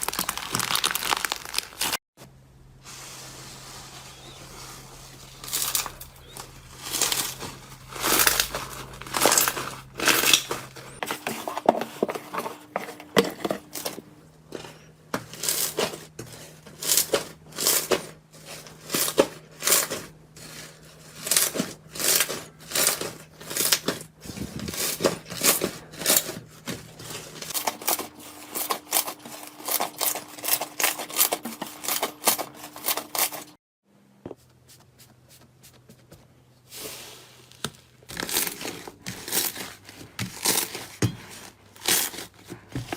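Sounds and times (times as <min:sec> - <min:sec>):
slime crackling and popping: 0:00.0 - 0:02.0.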